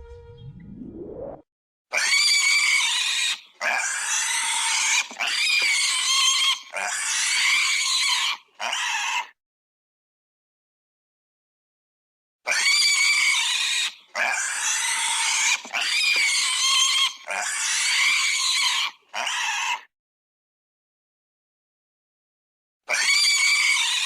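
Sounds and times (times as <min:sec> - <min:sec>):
pig squealing: 0:01.9 - 0:09.4, 0:12.5 - 0:19.9, 0:22.9 - 0:24.0.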